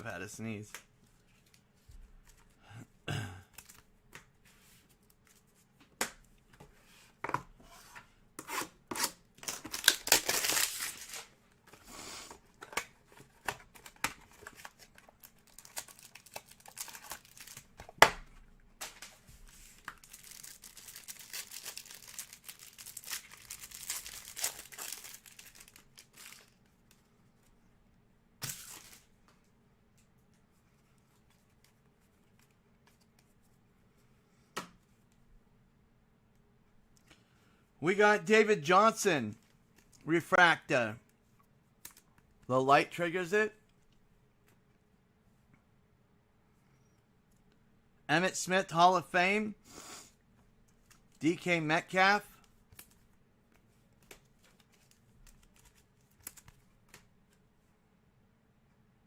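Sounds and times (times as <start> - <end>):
packaging being torn open: 9.4 - 11.3, 19.9 - 26.6
wrapping crinkling: 9.4 - 11.3, 13.7 - 18.0, 19.4 - 26.7.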